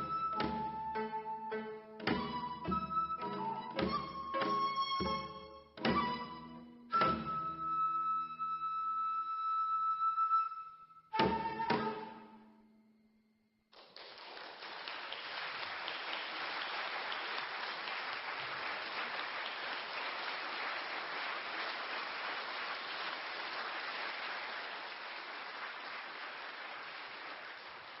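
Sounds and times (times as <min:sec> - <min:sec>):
audience applauding: 0:13.7 - 0:28.0.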